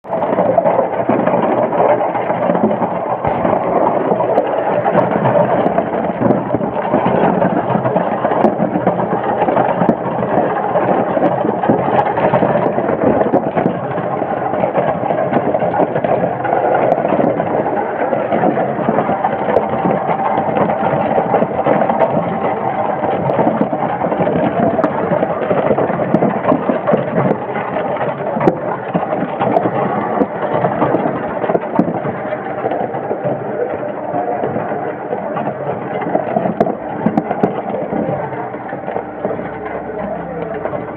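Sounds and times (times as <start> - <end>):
ice machine drone: 0.0 - 40.9.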